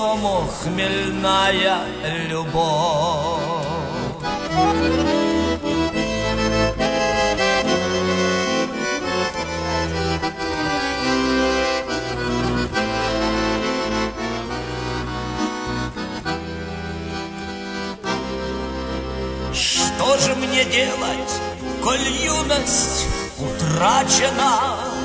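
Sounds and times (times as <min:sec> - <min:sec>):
instrumental song melody with bass: 0:00.0 - 0:25.0.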